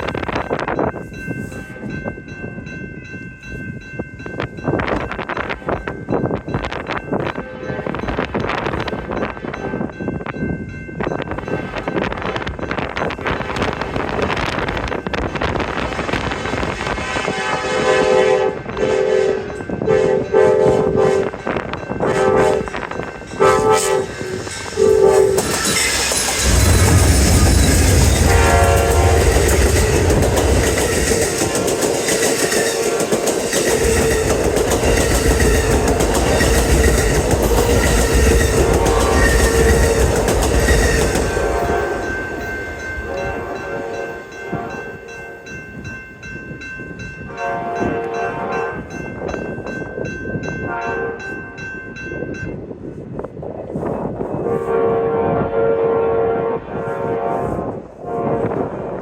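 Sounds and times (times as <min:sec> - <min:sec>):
diesel locomotive engine rumble: 0:00.0 - 0:59.0
train wheels clickety-clack: 0:11.1 - 0:44.4
train air horn blasts: 0:15.7 - 0:25.6, 0:27.9 - 0:30.6, 0:32.7 - 0:34.2, 0:37.6 - 0:42.4, 0:43.0 - 0:45.1, 0:47.3 - 0:48.9, 0:50.7 - 0:51.5, 0:54.3 - 0:59.0.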